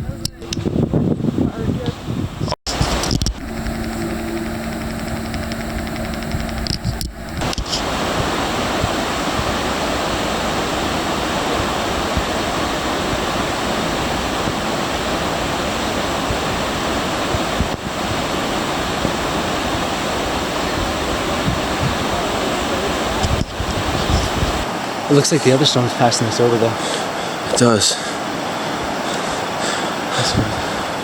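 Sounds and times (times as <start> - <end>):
flood water rushing down a creek: 7.4 - 31.0.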